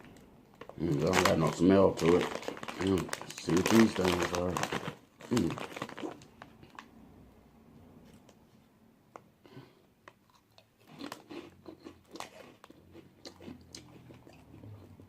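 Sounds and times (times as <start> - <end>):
person chewing crunchy chips: 0.6 - 6.4, 10.2 - 15.0.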